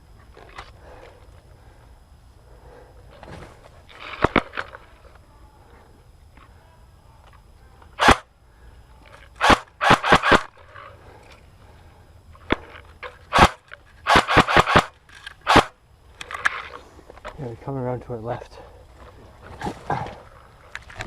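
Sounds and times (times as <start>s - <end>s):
airsoft gun shots: 8.0s - 8.3s, 9.4s - 10.6s, 13.3s - 15.8s.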